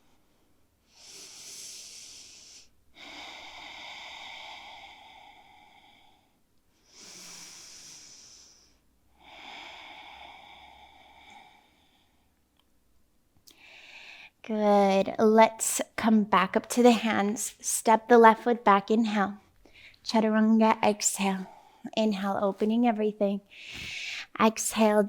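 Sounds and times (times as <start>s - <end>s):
person breathing slowly: 0.0s - 12.4s, 13.5s - 14.4s, 19.6s - 20.0s, 21.4s - 22.0s, 23.4s - 24.3s.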